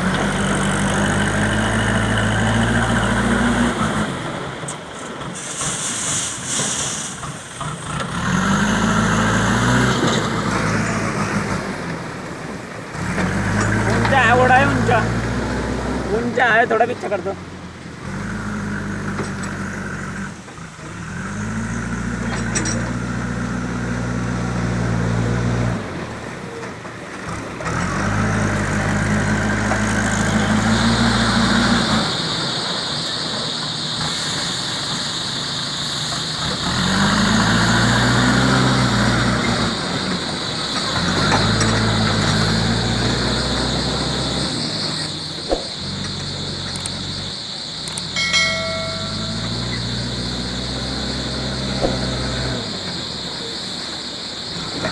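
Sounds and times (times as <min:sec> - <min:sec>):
diesel engine revving: 0:00.0 - 0:54.9
steady high whine: 0:45.1 - 0:50.4.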